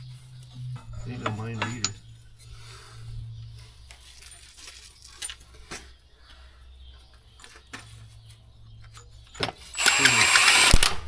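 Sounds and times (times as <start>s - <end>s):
metallic clinks and taps: 1.2s - 2.0s.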